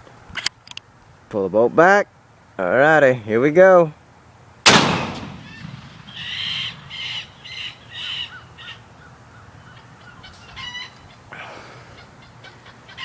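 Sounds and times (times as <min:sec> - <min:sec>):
rifle shot echo: 0:04.6 - 0:07.0
birds calling harshly: 0:04.8 - 0:13.0.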